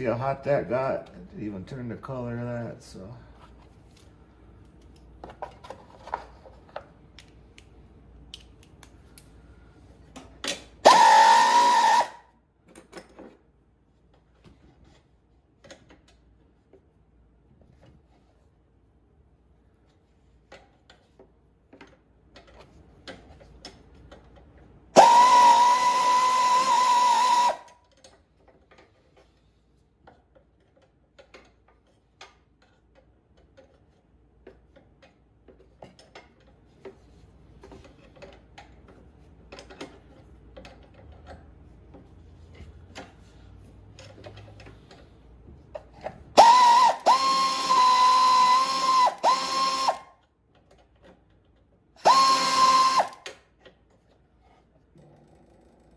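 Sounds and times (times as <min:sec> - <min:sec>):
power tool motor whining: 0:10.8 - 0:12.2, 0:25.0 - 0:27.7, 0:46.4 - 0:50.1, 0:52.0 - 0:53.2
clicks and knocks of tool handling: 0:30.0 - 0:43.2.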